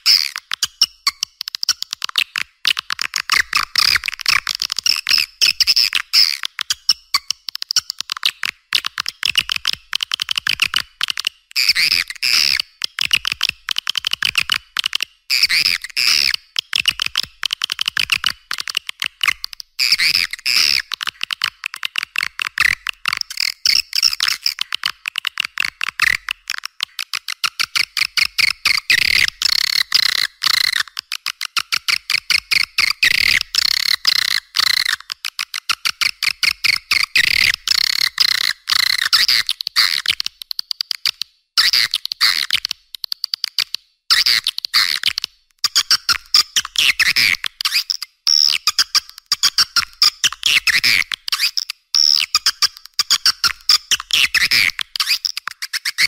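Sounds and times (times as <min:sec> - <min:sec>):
swiftlets chirping and clicking: 0:19.8 - 0:56.0.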